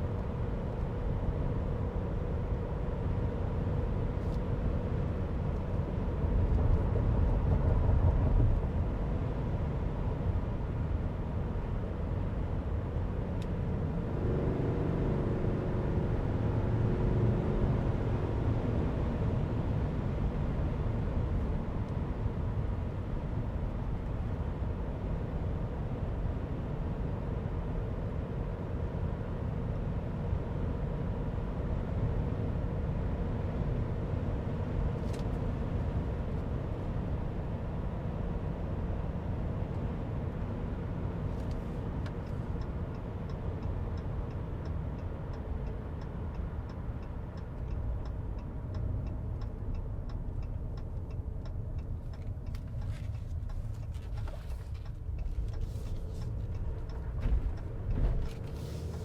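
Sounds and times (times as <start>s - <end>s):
light regular ticking: 42.0s - 58.0s.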